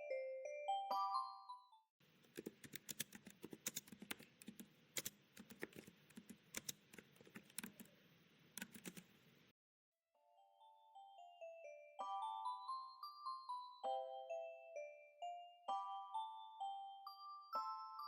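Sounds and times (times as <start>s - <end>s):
faint steady hiss: 2.0s - 9.6s.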